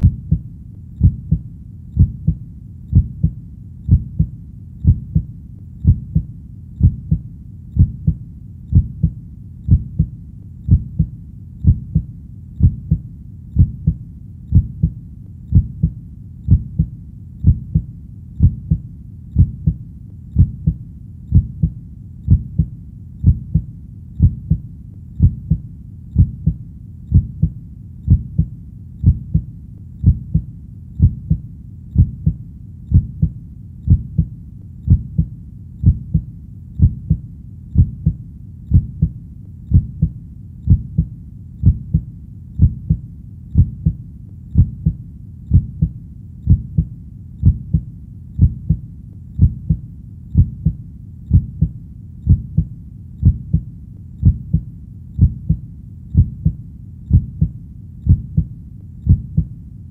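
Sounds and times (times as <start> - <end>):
heartbeat thumping: 0.0 - 59.6.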